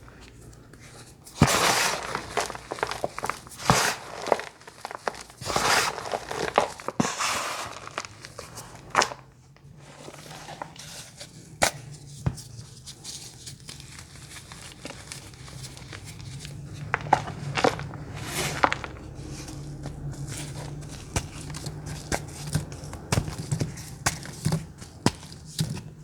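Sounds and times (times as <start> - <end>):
crunching and crinkling material: 0.0 - 26.0.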